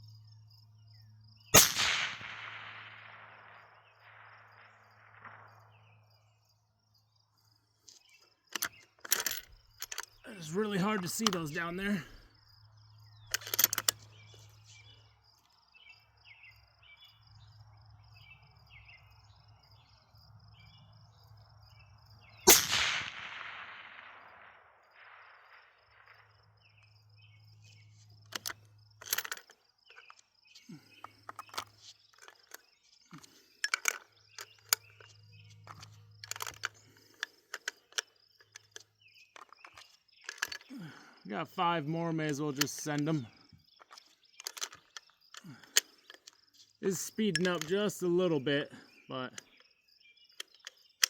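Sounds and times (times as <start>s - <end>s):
insects chirping: 0.0s - 51.0s
rifle shot echoing: 1.6s - 6.0s, 22.4s - 26.4s
small clicks and knocks: 7.8s - 10.2s, 13.2s - 15.6s, 27.6s - 40.7s, 42.3s - 47.9s, 49.3s - 51.0s.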